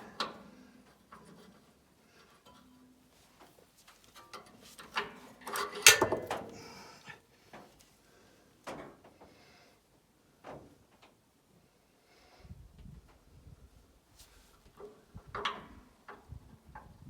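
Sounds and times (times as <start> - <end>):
tools clicking and knocking: 4.2 - 6.6.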